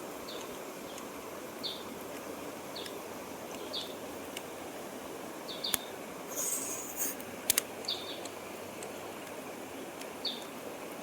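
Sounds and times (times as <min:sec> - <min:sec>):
bird chirping: 0:01.6 - 0:01.9, 0:03.6 - 0:04.0, 0:05.5 - 0:07.1, 0:07.8 - 0:08.3, 0:10.2 - 0:10.5
brief high hiss: 0:06.3 - 0:07.2
sharp clicks: 0:07.4 - 0:09.4.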